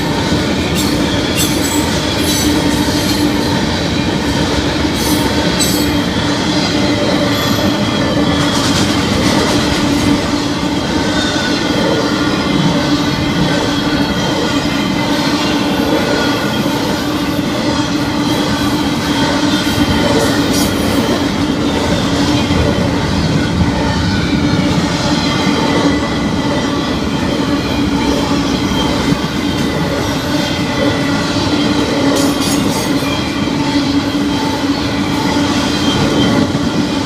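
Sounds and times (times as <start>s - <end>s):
train wheels rumbling on rail: 0.0s - 37.0s
faint high wheel squeal: 10.9s - 22.6s, 23.2s - 37.0s.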